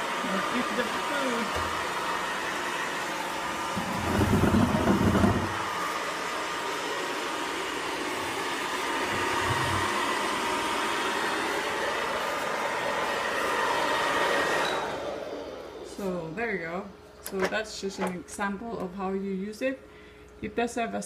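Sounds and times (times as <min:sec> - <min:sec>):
robot vacuum whirring: 0:00.7 - 0:06.7, 0:07.6 - 0:15.8.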